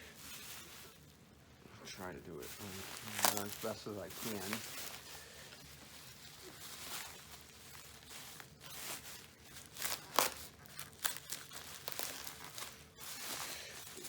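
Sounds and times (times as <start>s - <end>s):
bubble wrap crinkling: 0.0s - 14.0s
sharp plastic crackles: 2.0s - 14.0s.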